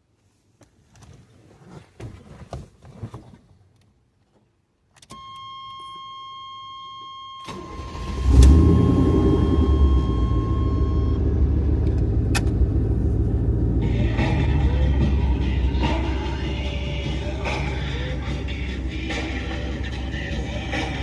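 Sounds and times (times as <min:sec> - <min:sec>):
truck engine cranking and running: 0:07.4 - 0:21.0.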